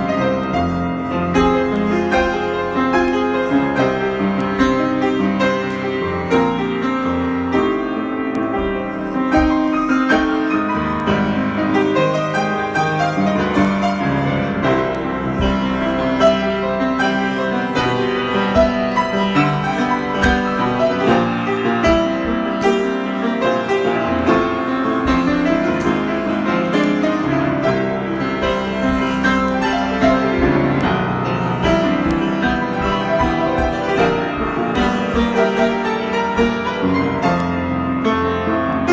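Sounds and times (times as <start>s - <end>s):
piano improvisation: 0.0s - 38.9s.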